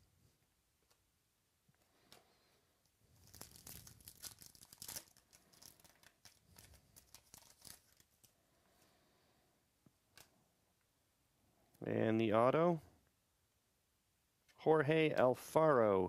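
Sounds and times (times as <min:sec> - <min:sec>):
card pack wrapper tearing: 0:03.2 - 0:08.3.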